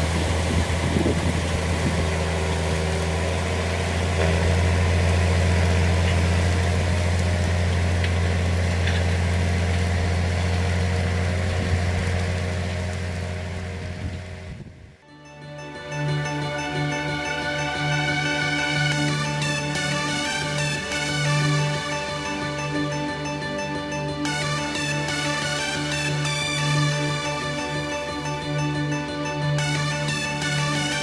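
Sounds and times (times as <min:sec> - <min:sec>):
tractor diesel engine running: 0:00.0 - 0:31.0
music: 0:15.0 - 0:31.0.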